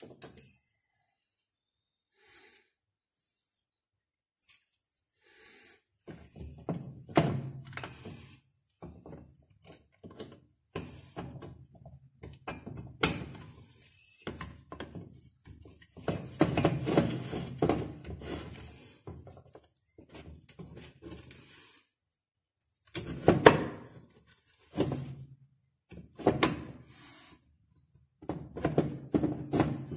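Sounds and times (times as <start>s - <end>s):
tools and metal parts rattling: 8.9s - 10.4s.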